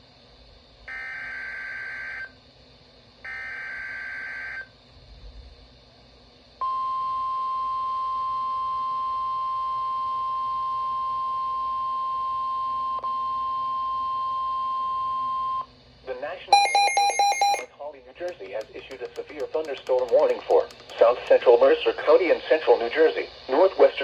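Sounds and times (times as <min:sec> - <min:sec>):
steady warning alarm tone: 0:00.9 - 0:02.3, 0:03.2 - 0:04.7, 0:16.5 - 0:17.7.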